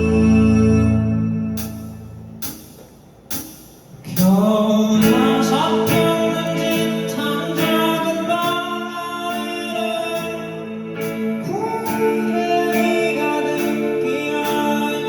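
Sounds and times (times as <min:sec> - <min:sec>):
drum hits: 0:01.6 - 0:06.9
singing: 0:04.1 - 0:15.0
live rock band playing: 0:05.0 - 0:15.0.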